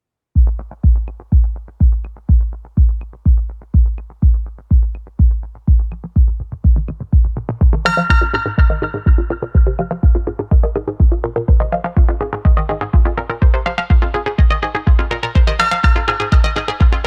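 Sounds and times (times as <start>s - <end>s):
kick drum: 0.4s - 17.0s
bright synthesizer chord: 7.9s - 17.0s.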